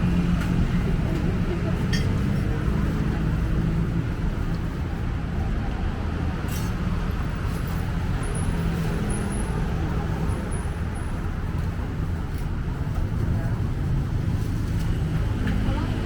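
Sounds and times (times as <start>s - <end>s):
faint voices: 0.0s - 7.1s
city road traffic rumble: 0.0s - 16.0s.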